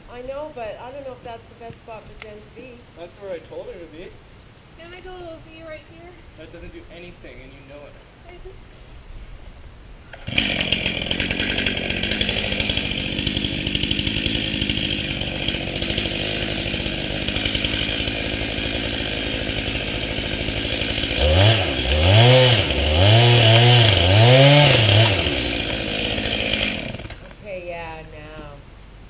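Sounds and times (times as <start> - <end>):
chainsaw cutting wood: 10.2 - 27.3.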